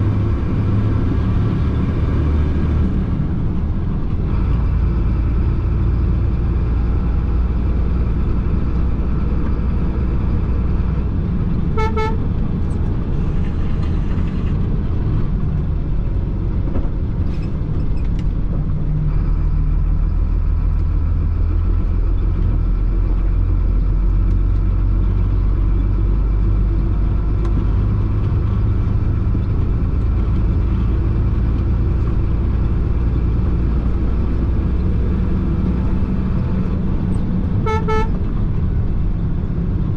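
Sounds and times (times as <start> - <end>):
truck diesel engine running: 0.0 - 39.9
horn toot: 11.8 - 12.2, 37.6 - 38.2.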